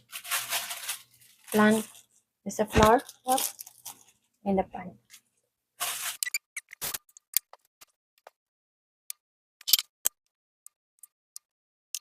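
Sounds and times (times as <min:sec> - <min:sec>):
fat crackling and popping: 0:00.0 - 0:04.4.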